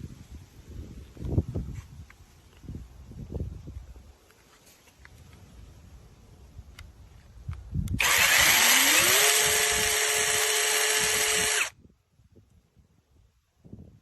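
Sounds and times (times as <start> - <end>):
electric chainsaw motor whining: 7.9 - 11.8.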